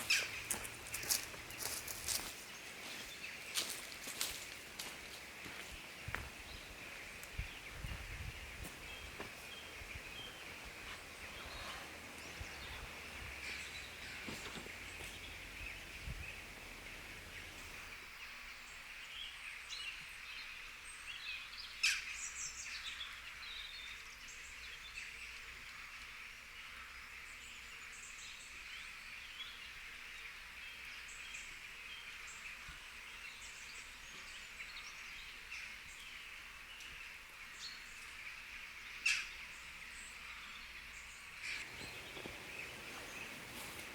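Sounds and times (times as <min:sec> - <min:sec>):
birds chirping: 0:00.0 - 0:24.0, 0:31.3 - 0:43.9
steady high hiss: 0:04.8 - 0:19.1, 0:41.4 - 0:43.9.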